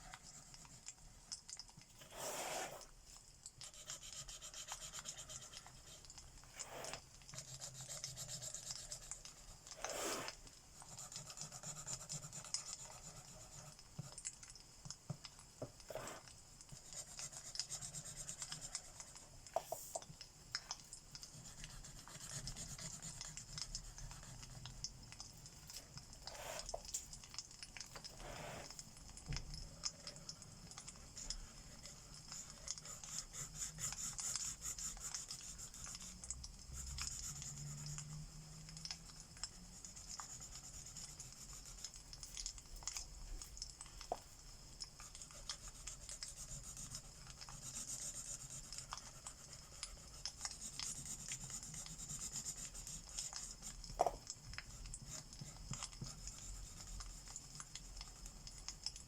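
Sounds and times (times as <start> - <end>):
marker rubbing on paper: 2.0 - 2.9, 3.6 - 6.0, 6.6 - 13.7, 15.9 - 16.2, 16.8 - 20.0, 21.3 - 24.3, 26.3 - 26.8, 28.2 - 28.7.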